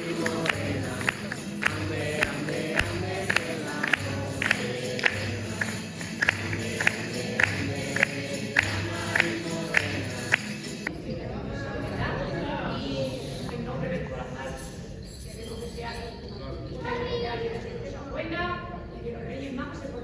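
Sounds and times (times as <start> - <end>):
group singing over instruments: 0.0 - 10.9
sharp percussion strikes: 0.0 - 10.9.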